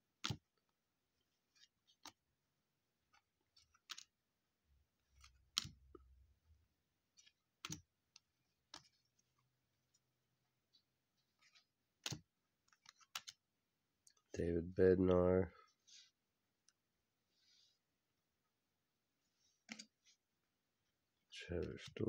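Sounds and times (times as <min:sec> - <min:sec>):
trading cards clicking and snapping: 0:02.0 - 0:02.2, 0:03.7 - 0:04.1, 0:05.1 - 0:06.0, 0:07.6 - 0:07.8, 0:12.0 - 0:13.4.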